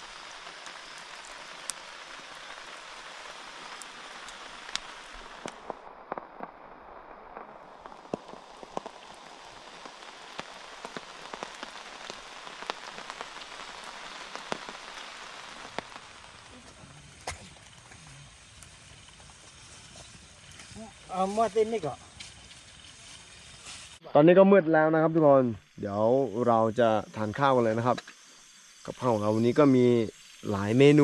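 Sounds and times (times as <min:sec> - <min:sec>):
rain falling: 0:00.0 - 0:24.0.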